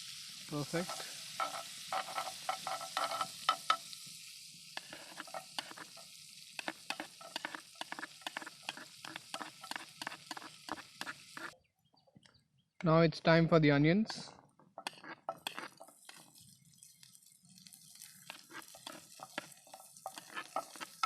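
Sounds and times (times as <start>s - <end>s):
food sizzling in a frying pan: 0.0s - 11.6s, 14.7s - 21.0s
spatula tapping a pan: 1.4s - 3.9s, 6.6s - 11.5s, 18.3s - 21.0s.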